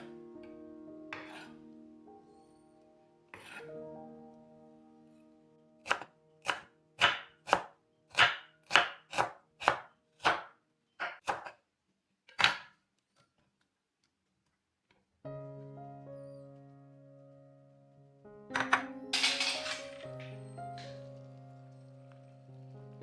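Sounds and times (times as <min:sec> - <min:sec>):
knife chopping on cutting board: 0:01.2 - 0:01.5, 0:03.4 - 0:03.6, 0:05.9 - 0:11.6, 0:12.4 - 0:12.7.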